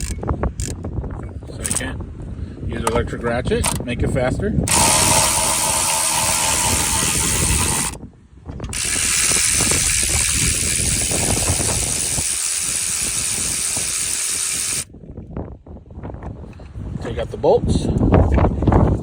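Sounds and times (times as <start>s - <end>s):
cordless electric ratchet running: 4.7s - 8.0s, 8.7s - 14.9s.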